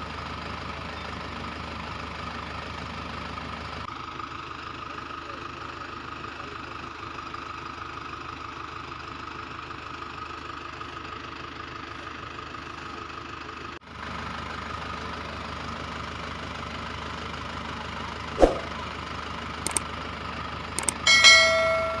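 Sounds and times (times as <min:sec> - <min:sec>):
engine running with whine: 0:10.9 - 0:22.0
sharp clicks: 0:19.7 - 0:19.9, 0:20.8 - 0:21.0
bell-like chime: 0:21.1 - 0:22.0.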